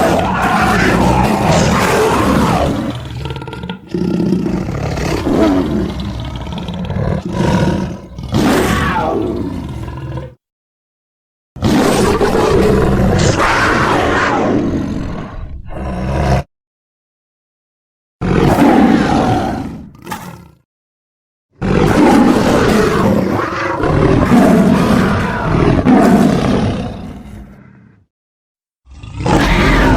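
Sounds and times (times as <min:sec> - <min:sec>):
creature roaring: 0:00.0 - 0:10.4, 0:11.6 - 0:16.5, 0:18.2 - 0:20.6, 0:21.6 - 0:28.1, 0:28.9 - 0:29.9.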